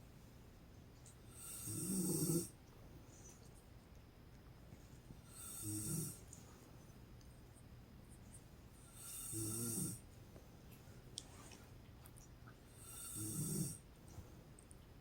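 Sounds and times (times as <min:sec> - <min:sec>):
woman snoring: 0:01.4 - 0:02.5, 0:05.3 - 0:06.2, 0:09.0 - 0:10.0, 0:12.8 - 0:13.8.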